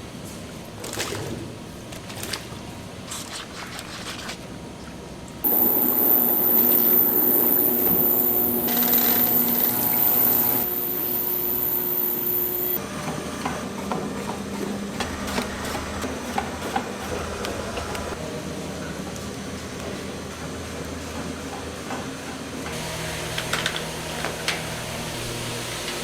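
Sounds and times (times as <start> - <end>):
machinery whine and hum: 5.4 - 12.8.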